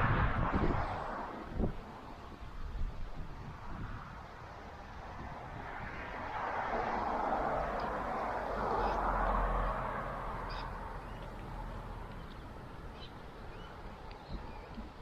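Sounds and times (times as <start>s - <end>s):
vehicle passing: 0.0s - 2.3s, 3.6s - 12.9s
small birds chirping: 10.4s - 15.0s.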